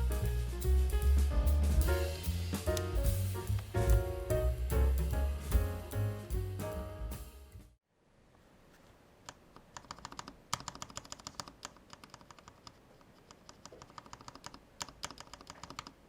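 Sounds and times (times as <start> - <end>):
keyboard typing: 9.7 - 16.0.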